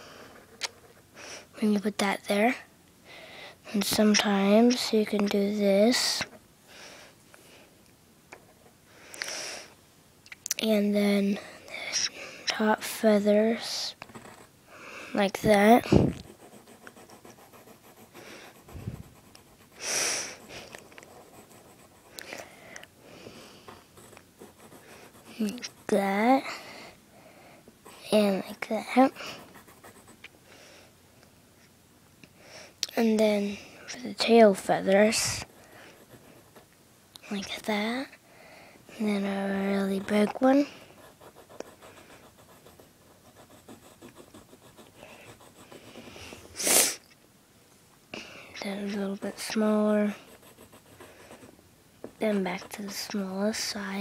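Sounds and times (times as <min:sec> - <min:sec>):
person breathing: 0:03.0 - 0:03.6, 0:06.7 - 0:07.8, 0:14.7 - 0:15.2, 0:22.1 - 0:24.0, 0:26.4 - 0:27.7, 0:38.2 - 0:38.9, 0:45.0 - 0:47.0, 0:51.0 - 0:51.5
drawing tool scratching on paper: 0:16.2 - 0:22.2, 0:23.7 - 0:26.0, 0:27.8 - 0:30.2, 0:39.2 - 0:46.6, 0:48.6 - 0:51.6, 0:52.2 - 0:53.7.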